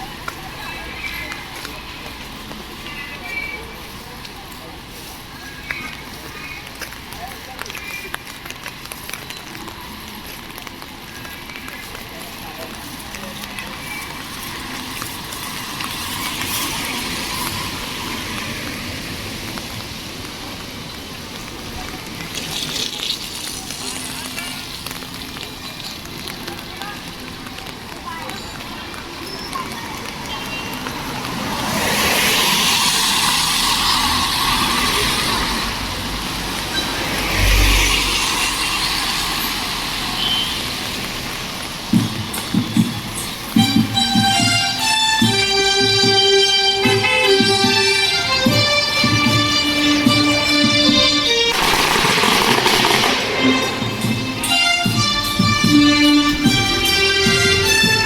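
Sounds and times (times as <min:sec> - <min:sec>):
tyres hissing on wet road: 0:00.0 - 0:58.0.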